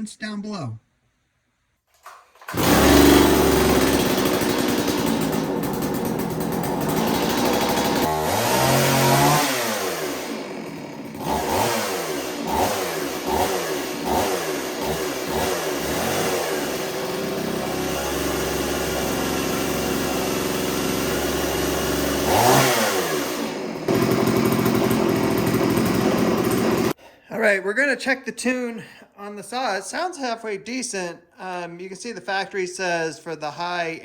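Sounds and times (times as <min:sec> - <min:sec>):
chainsaw engine revving: 0:02.4 - 0:27.0.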